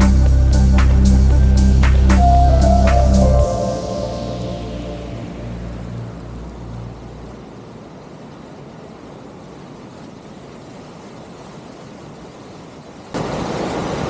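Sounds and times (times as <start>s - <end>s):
background music: 0.0s - 7.2s
creek and waterfalls rushing: 0.0s - 14.0s.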